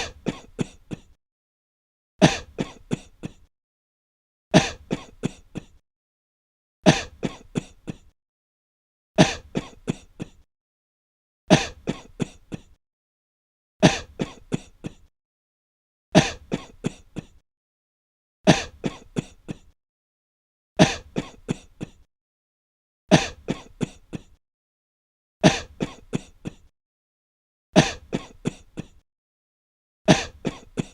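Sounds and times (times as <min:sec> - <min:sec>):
person coughing in fits: 0:00.0 - 0:01.2, 0:02.2 - 0:03.5, 0:04.6 - 0:05.8, 0:06.8 - 0:08.1, 0:09.2 - 0:10.5, 0:11.5 - 0:12.8, 0:13.8 - 0:15.1, 0:16.2 - 0:17.4, 0:18.5 - 0:19.8, 0:20.8 - 0:22.1, 0:23.1 - 0:24.4, 0:25.4 - 0:26.7, 0:27.8 - 0:29.0, 0:30.1 - 0:30.9.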